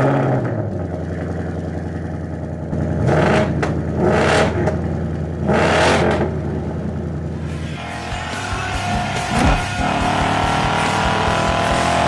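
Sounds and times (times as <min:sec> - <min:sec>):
car engine idling and revving: 0:00.0 - 0:12.0.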